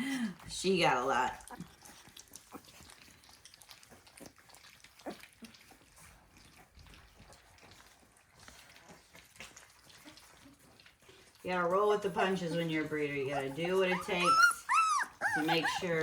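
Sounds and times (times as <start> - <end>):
puppies lapping and smacking: 0.0 - 16.0.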